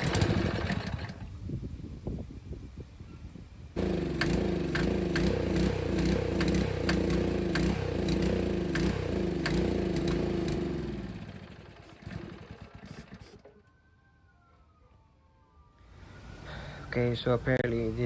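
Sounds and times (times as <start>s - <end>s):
small engine running and dying: 0.0s - 1.3s, 3.8s - 13.6s
engine knocks: 3.8s - 13.2s.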